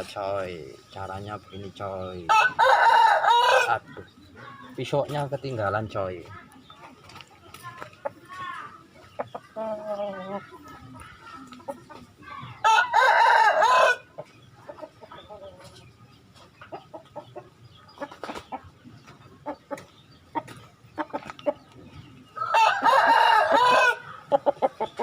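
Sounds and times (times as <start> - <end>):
rooster crowing: 2.3 - 3.7, 12.6 - 14.0, 22.4 - 24.1.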